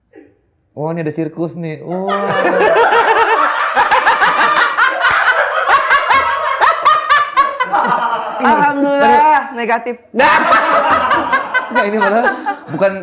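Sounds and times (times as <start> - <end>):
people laughing hard: 2.0 - 9.2, 10.2 - 13.0.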